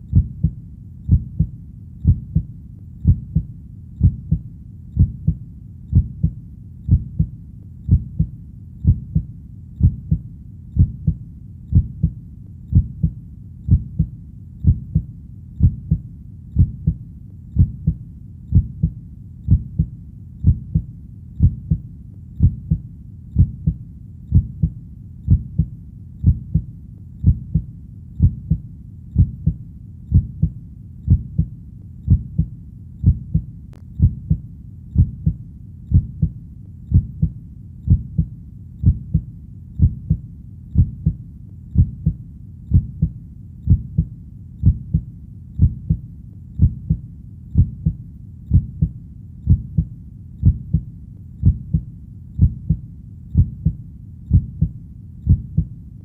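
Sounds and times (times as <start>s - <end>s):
heartbeat double thump: 0.1s - 4.4s, 5.0s - 7.3s, 7.9s - 10.2s, 10.8s - 16.0s, 16.6s - 17.0s, 17.6s - 21.8s, 22.4s - 22.8s, 23.4s - 28.6s, 29.2s - 31.5s, 32.1s - 40.2s, 40.8s - 41.2s, 41.8s - 46.0s, 46.6s - 47.0s, 47.6s - 48.9s, 49.5s - 51.8s, 52.4s - 52.8s, 53.4s - 55.7s.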